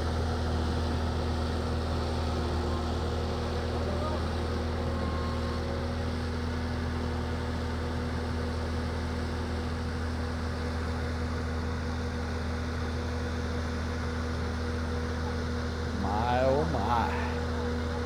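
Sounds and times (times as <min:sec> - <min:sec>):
diesel engine running: 0:15.0 - 0:18.0.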